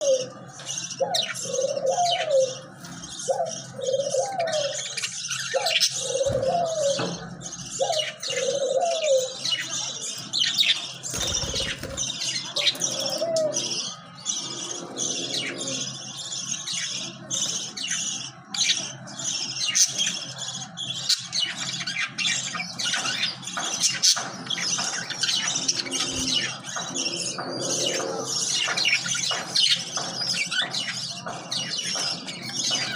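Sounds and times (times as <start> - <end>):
budgerigars chirping: 0.2 - 32.9.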